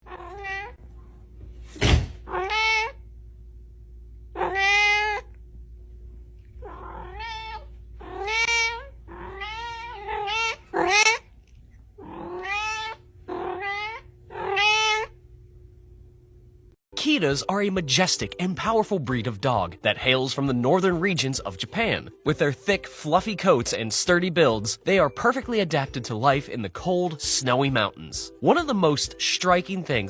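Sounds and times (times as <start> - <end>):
cat meowing: 0.1 - 0.8, 2.3 - 2.9, 4.4 - 5.2, 6.6 - 11.2, 12.0 - 15.1.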